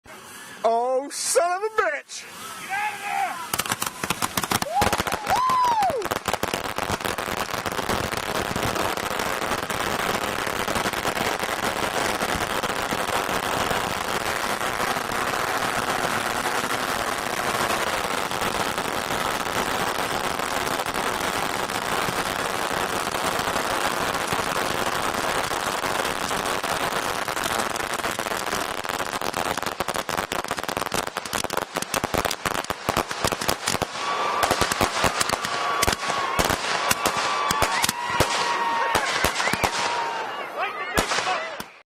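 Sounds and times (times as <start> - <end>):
firework whistle: 2.3 - 6.2, 33.9 - 40.2
roman candles firing: 3.5 - 28.8.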